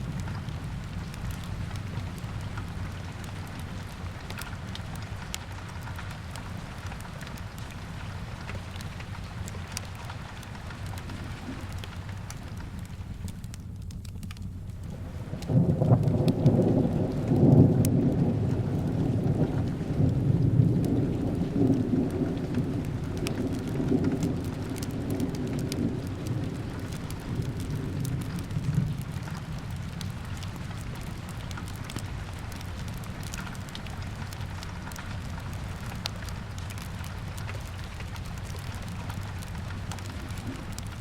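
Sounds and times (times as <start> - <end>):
fireplace crackles: 0.0 - 41.0
steady rain: 0.0 - 41.0
thunder rolling: 15.0 - 33.6.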